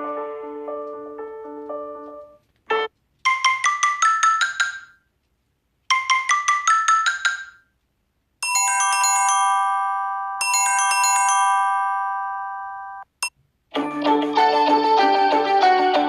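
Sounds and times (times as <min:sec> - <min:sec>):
marimba-like ringtone notes: 0:03.3 - 0:05.0, 0:05.9 - 0:07.6, 0:08.4 - 0:13.1
bell-like chime chord: 0:08.4 - 0:13.1.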